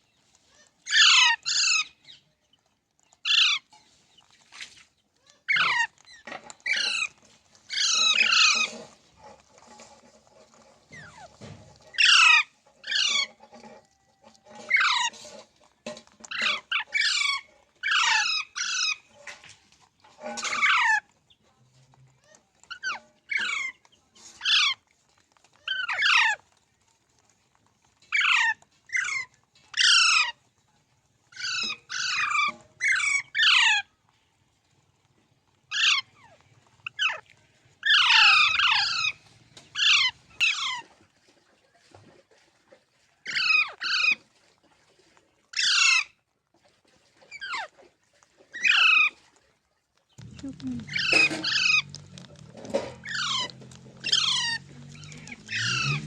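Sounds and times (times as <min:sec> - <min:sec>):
parakeet squawking: 0:00.9 - 0:02.2, 0:03.2 - 0:03.6, 0:05.3 - 0:08.9, 0:10.9 - 0:13.5, 0:14.6 - 0:15.4, 0:16.2 - 0:19.1, 0:25.6 - 0:26.4, 0:28.1 - 0:30.3, 0:31.4 - 0:33.8, 0:35.7 - 0:40.8, 0:50.2 - 0:56.0.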